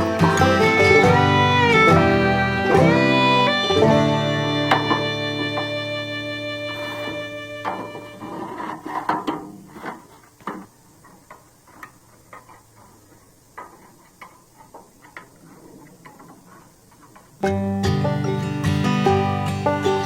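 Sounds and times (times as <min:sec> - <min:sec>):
banjo music: 0:00.0 - 0:09.6, 0:17.4 - 0:20.0.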